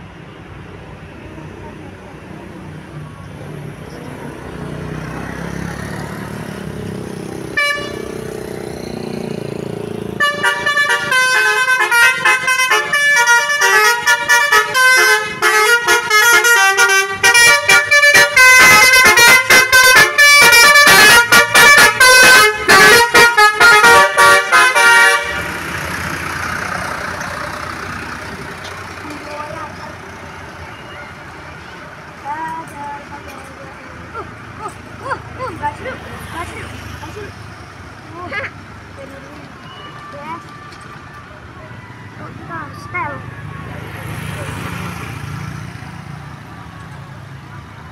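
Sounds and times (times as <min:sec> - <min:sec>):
bus horn playing melody: 0:07.5 - 0:08.3, 0:10.2 - 0:26.0.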